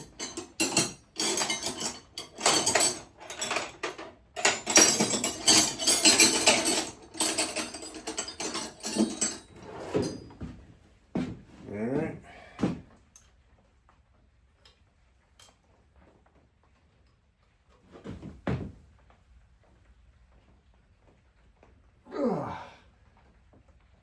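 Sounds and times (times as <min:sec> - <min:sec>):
metal hand tools clinking: 0:00.0 - 0:10.3.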